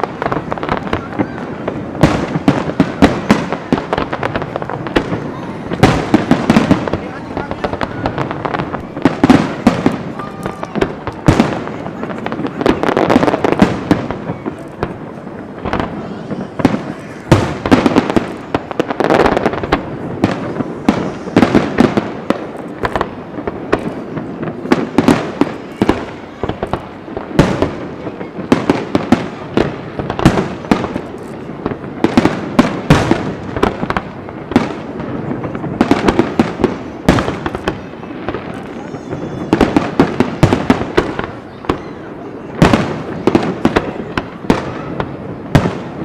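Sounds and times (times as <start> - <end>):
fireworks bangs: 0.0 - 46.0
fireworks crackling: 0.0 - 46.0.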